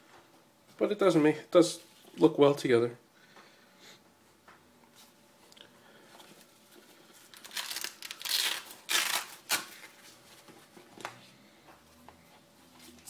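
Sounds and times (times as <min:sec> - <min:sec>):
material crinkling and rustling: 0:06.2 - 0:13.0.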